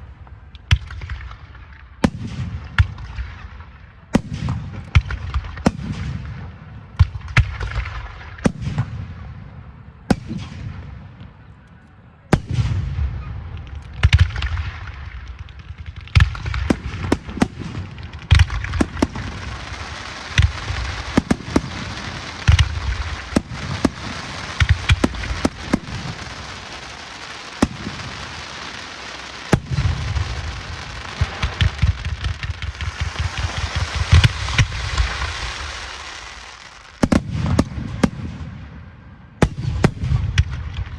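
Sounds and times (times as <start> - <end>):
fireworks bangs and booms: 0.0 - 40.9
fireworks crackling hiss: 13.6 - 38.8.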